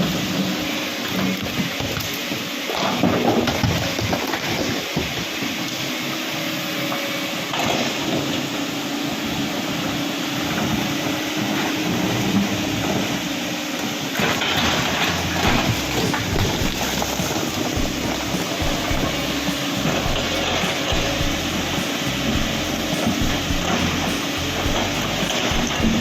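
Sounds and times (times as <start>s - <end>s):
heavy machinery clattering: 14.1s - 26.0s.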